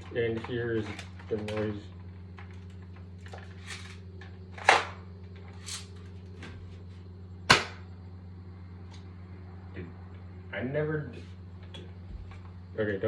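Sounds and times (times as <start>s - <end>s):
airsoft gun shots: 4.6s - 5.0s, 7.5s - 7.9s.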